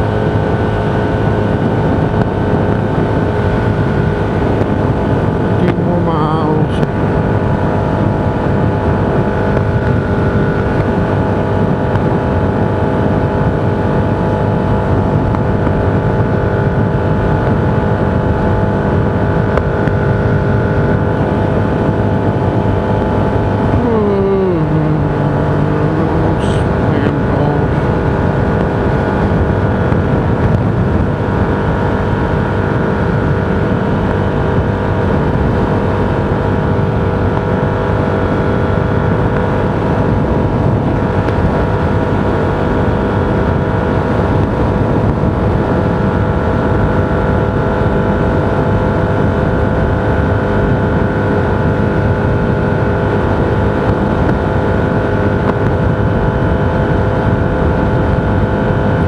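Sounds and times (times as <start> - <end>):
vehicle road and wind noise: 0.0 - 59.0
falling pitched tone: 23.7 - 28.1.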